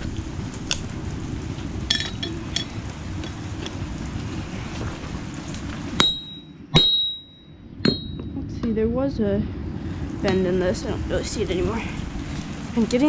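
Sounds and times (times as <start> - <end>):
forge burner rushing: 0.0 - 8.5
hammer striking steel: 6.0 - 8.3.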